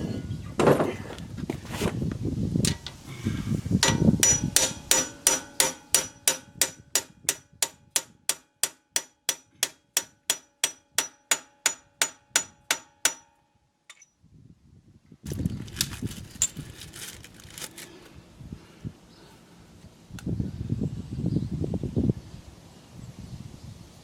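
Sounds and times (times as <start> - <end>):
hammering on metal: 3.8 - 13.4.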